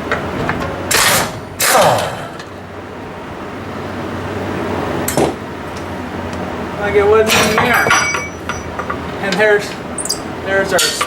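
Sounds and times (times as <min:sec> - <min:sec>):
metal scraping and clanking: 0:00.0 - 0:01.8, 0:07.2 - 0:11.0
low steady hum: 0:00.0 - 0:11.0.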